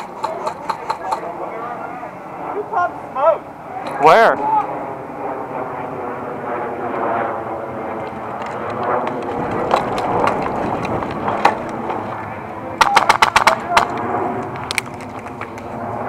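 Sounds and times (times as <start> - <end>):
sharp cracks: 0.0 - 1.3, 8.4 - 12.1, 12.8 - 15.7
steady engine drone: 0.0 - 16.0.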